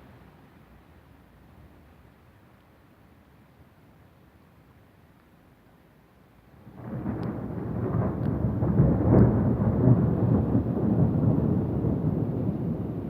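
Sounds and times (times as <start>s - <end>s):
loud thunder rolling: 6.6s - 13.0s.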